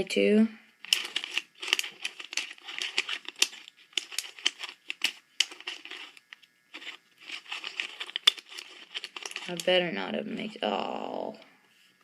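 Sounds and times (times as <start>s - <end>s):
plastic puzzle cube clicking: 0.8s - 9.8s.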